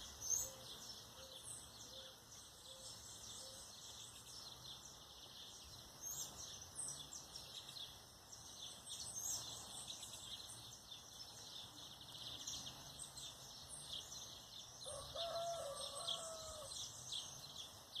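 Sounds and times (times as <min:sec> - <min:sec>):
small birds chirping: 0:00.0 - 0:18.0
rooster crowing: 0:14.8 - 0:16.8.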